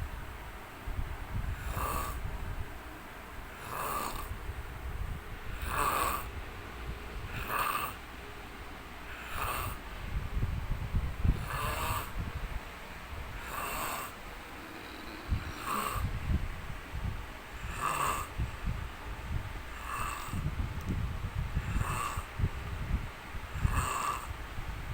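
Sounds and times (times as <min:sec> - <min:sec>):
man snoring: 0:01.5 - 0:02.2, 0:03.5 - 0:04.4, 0:05.5 - 0:06.3, 0:07.3 - 0:08.0, 0:09.1 - 0:09.8, 0:11.3 - 0:12.2, 0:13.4 - 0:16.2, 0:17.6 - 0:18.4, 0:19.8 - 0:20.5, 0:21.6 - 0:22.3, 0:23.5 - 0:24.3.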